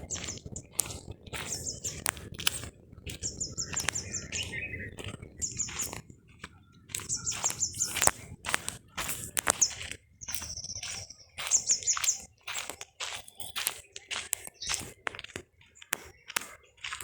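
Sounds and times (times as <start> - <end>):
birds chirping: 0.0 - 17.0
bird high trill: 3.1 - 6.0, 7.0 - 8.1, 9.0 - 12.3.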